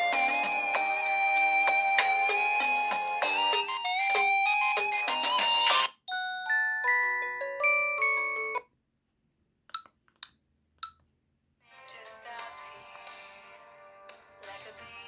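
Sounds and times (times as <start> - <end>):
phone ringtone melody: 0.0 - 8.6.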